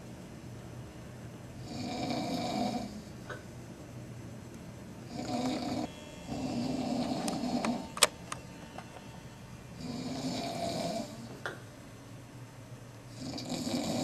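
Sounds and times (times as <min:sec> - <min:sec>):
man snoring heavily: 0:01.6 - 0:03.1, 0:05.1 - 0:07.9, 0:09.8 - 0:11.3, 0:13.1 - 0:14.0
sharp click: 0:07.2 - 0:09.0.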